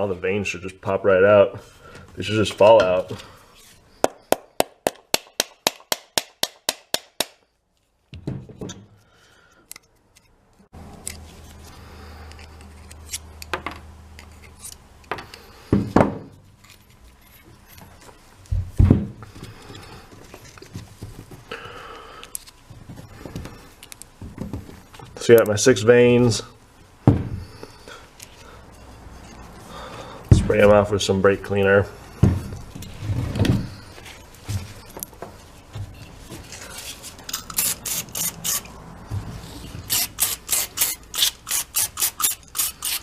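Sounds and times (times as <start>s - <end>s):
metal parts clinking and knocking: 37.2s - 38.7s.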